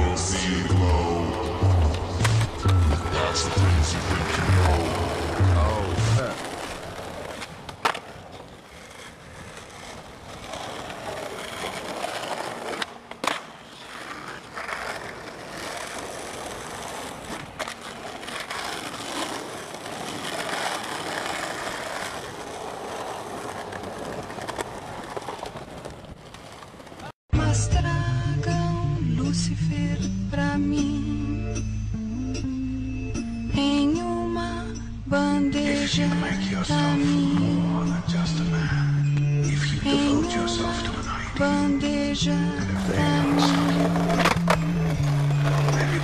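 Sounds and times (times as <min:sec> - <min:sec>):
rough rolling scraping noise: 0:00.0 - 0:27.1, 0:42.2 - 0:46.0.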